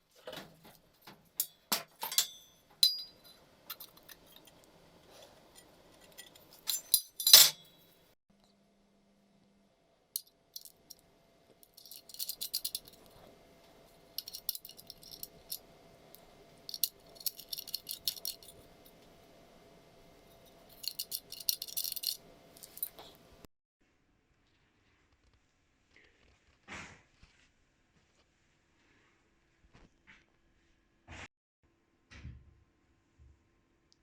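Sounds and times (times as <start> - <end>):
metallic rattling and clinking: 0.3 - 7.9, 11.6 - 13.2, 14.2 - 19.0, 20.3 - 23.2.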